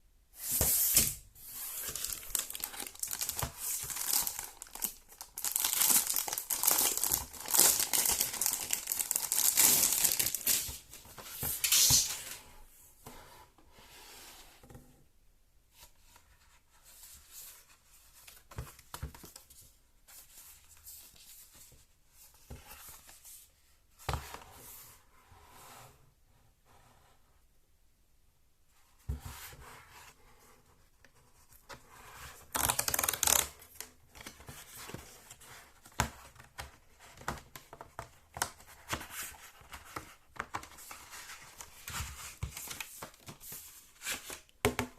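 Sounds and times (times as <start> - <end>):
paper and plastic crinkling: 1.7 - 12.3, 32.5 - 33.5.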